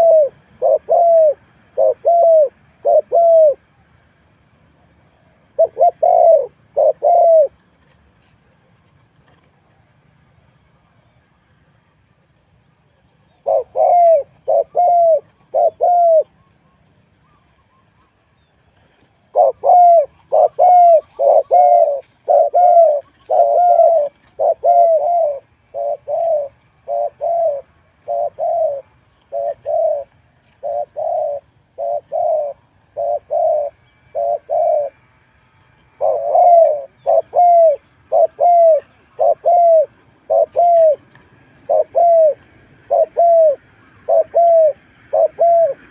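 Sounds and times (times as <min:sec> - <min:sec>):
dove cooing: 0:00.0 - 0:03.8, 0:04.8 - 0:07.7, 0:13.3 - 0:18.2, 0:18.8 - 0:35.2, 0:35.9 - 0:45.9.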